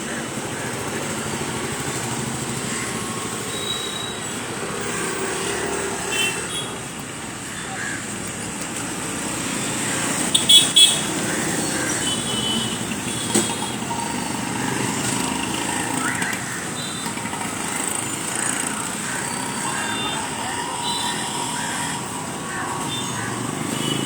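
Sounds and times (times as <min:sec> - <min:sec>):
background traffic noise: 0:00.0 - 0:24.0
vehicle horn toots: 0:10.3 - 0:11.1, 0:12.0 - 0:13.9.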